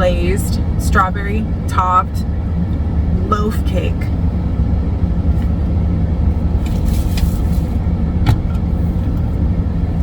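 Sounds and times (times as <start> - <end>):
truck engine rumbling: 0.0 - 10.0
short rustle: 6.6 - 7.8.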